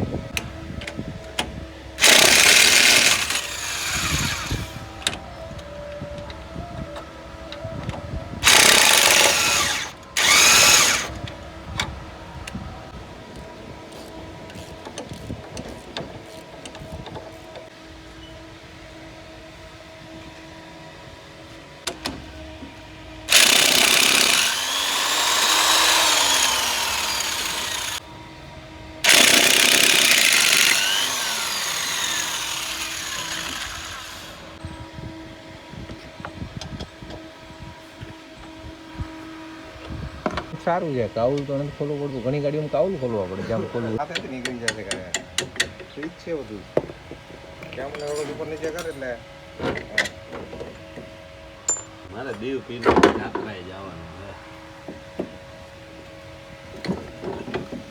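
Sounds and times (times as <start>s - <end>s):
impact wrench hammering: 23.3s - 28.0s, 29.1s - 33.7s
tools clanking on metal: 47.6s - 49.0s, 51.7s - 51.9s.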